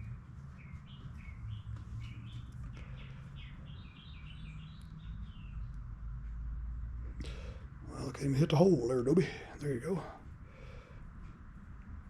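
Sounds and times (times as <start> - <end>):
small bird chirping: 0.0 - 5.8
low steady hum: 0.0 - 12.0.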